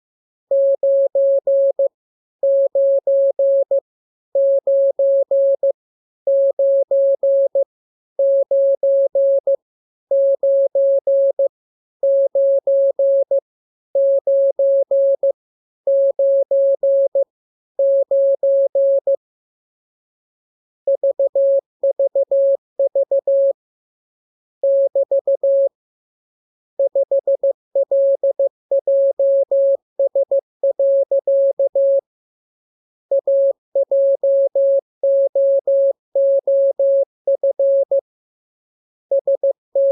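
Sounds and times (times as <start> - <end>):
morse code beeps: 39.1 - 39.9.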